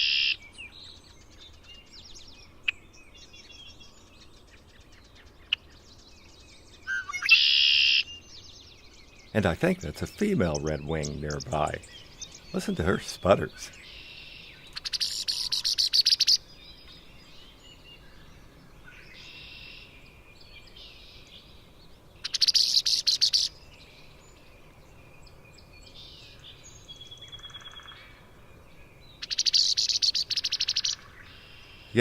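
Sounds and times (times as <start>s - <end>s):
faint birdsong: 0.0s - 32.0s
blackbird sputtering chatters: 9.4s - 13.8s.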